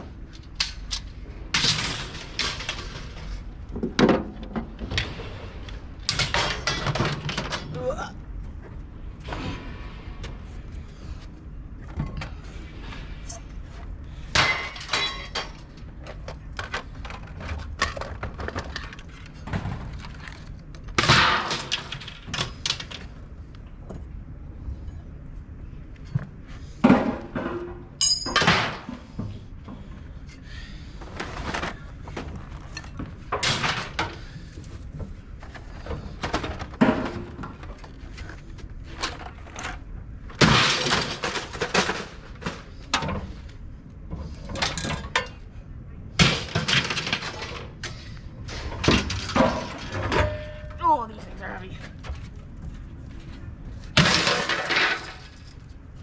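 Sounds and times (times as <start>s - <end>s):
metallic ring: 28.0s - 28.4s
scrap metal clanks and thuds: 46.2s - 50.8s, 53.8s - 55.6s.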